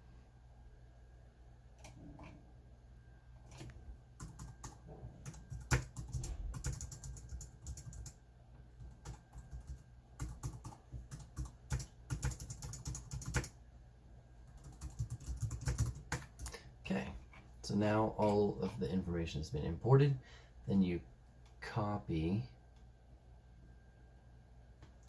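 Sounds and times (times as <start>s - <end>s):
low steady hum: 0.0s - 25.0s
keyboard typing: 3.4s - 8.2s, 8.8s - 13.6s, 14.4s - 16.6s.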